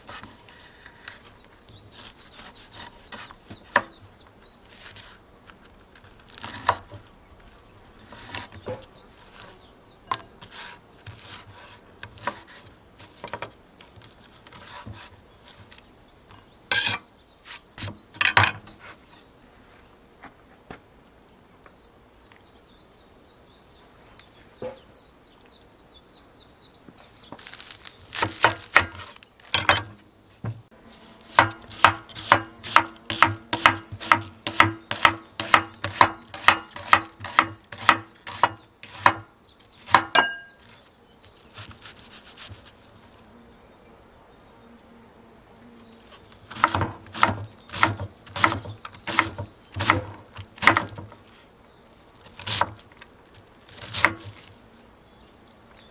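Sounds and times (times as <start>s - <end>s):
knife chopping on wooden board: 28.2s - 30.6s, 31.3s - 40.6s, 46.5s - 51.2s, 52.4s - 52.8s, 53.7s - 54.4s.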